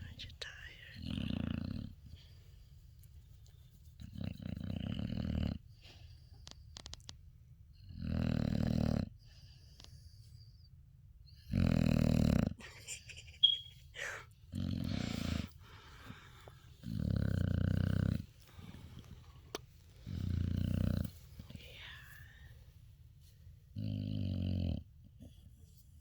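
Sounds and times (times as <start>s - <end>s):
dog snoring: 0.9s - 2.3s, 4.0s - 7.1s, 7.8s - 10.0s, 11.3s - 12.6s, 14.5s - 22.2s, 23.7s - 25.4s.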